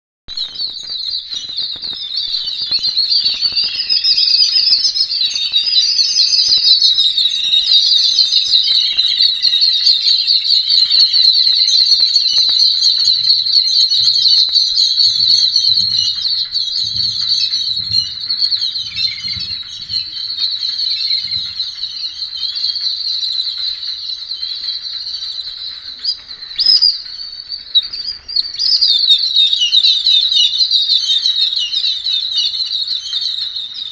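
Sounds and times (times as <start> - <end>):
flock of birds chattering: 0.3 - 33.9.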